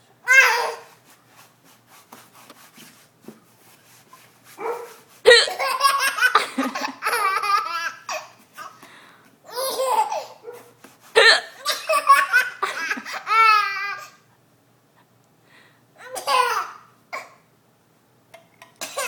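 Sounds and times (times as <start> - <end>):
baby laughing: 5.3 - 8.8, 9.5 - 10.5, 11.2 - 14.2.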